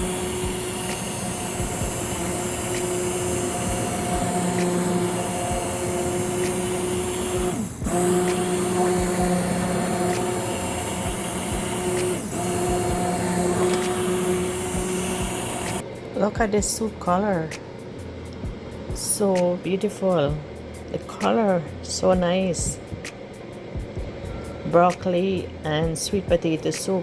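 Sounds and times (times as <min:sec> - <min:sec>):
immersion blender motor running: 0:00.0 - 0:15.8.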